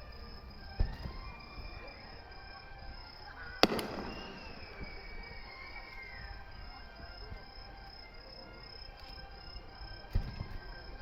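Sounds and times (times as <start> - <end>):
crickets chirping: 0.0 - 11.0
fireworks booming and cracking: 3.6 - 5.2.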